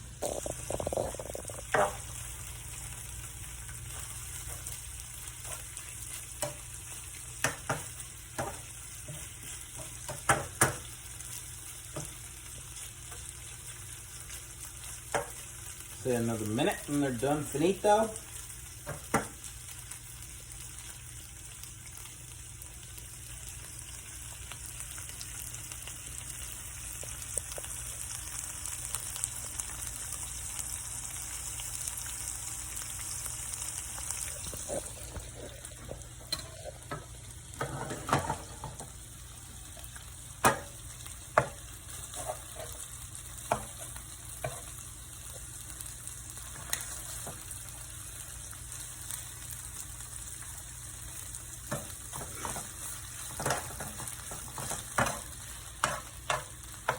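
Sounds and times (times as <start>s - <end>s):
fish sizzling in a frying pan: 0.0s - 56.9s.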